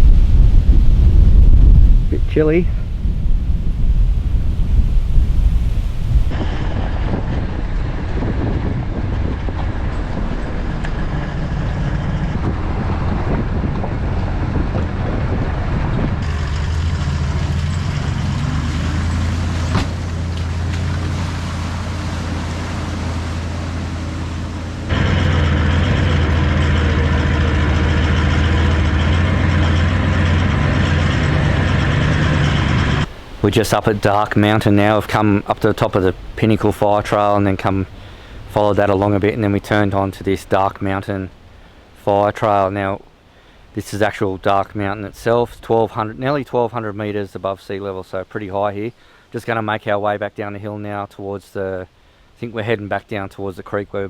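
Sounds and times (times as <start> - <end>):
road noise: 0.0 - 44.4
vehicle engine droning: 2.7 - 33.5.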